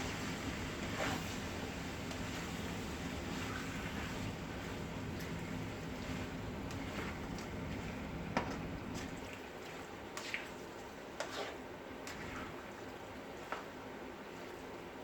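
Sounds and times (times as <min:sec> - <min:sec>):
pot simmering with bubbling hiss: 0:00.0 - 0:15.0.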